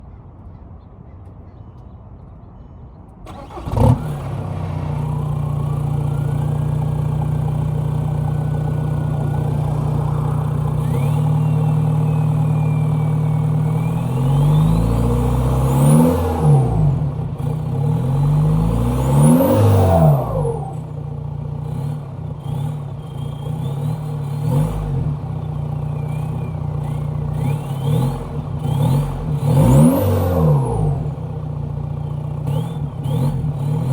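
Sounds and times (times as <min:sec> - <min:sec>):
diesel engine starting and revving: 0:03.3 - 0:33.9
turbocharger whistling: 0:03.3 - 0:33.9.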